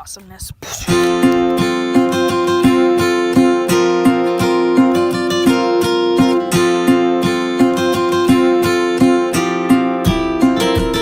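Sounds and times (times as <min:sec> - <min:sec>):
strummed guitar: 0:00.6 - 0:11.0.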